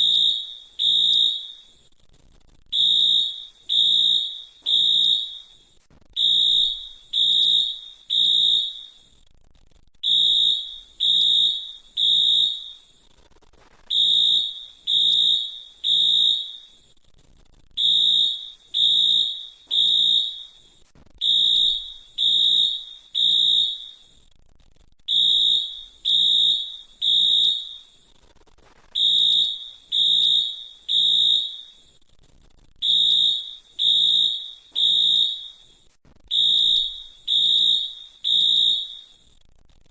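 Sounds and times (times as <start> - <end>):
fire alarm beeping: 0.0 - 1.7, 2.7 - 5.6, 6.2 - 9.0, 10.0 - 12.9, 13.9 - 16.8, 17.8 - 24.2, 25.1 - 28.0, 29.0 - 32.0, 32.8 - 35.7, 36.3 - 39.2.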